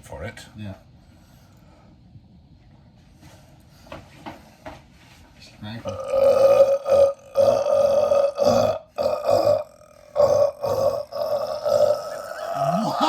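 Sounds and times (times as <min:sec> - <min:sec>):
man burping: 0:05.9 - 0:13.0.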